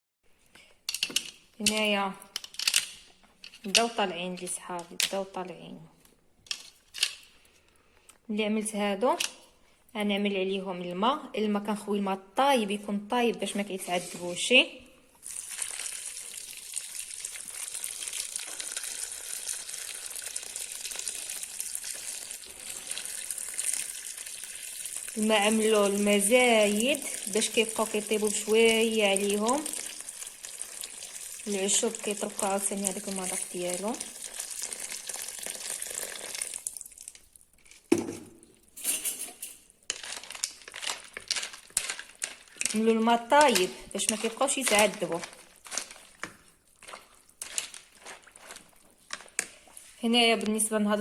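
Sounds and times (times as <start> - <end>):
utensils clicking and clinking: 0.6 - 5.2, 38.8 - 49.6
water pouring into pot: 15.2 - 37.5
rustling: 39.8 - 50.1.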